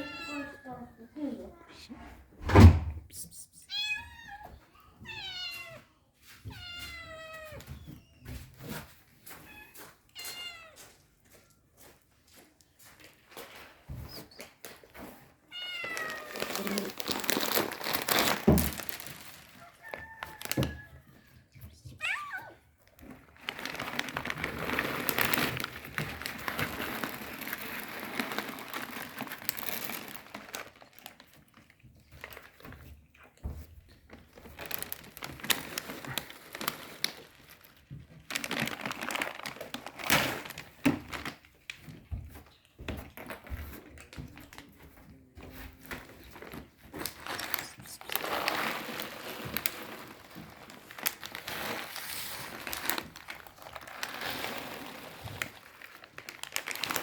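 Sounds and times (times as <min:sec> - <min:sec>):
cats meowing: 0:00.0 - 0:00.9, 0:03.6 - 0:08.2, 0:09.2 - 0:11.0, 0:15.4 - 0:17.5, 0:19.5 - 0:23.1
rustling and crackling: 0:04.4 - 0:57.0.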